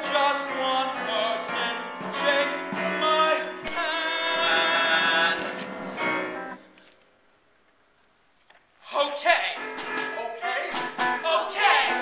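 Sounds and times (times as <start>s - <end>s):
person singing with vibrato: 0.0s - 6.2s, 8.8s - 12.0s
musical accompaniment: 0.0s - 6.8s, 9.5s - 12.0s.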